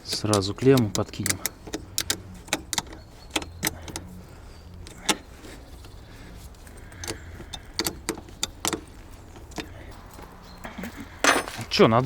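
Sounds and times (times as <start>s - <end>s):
wrench clinking on metal: 0.0s - 11.8s.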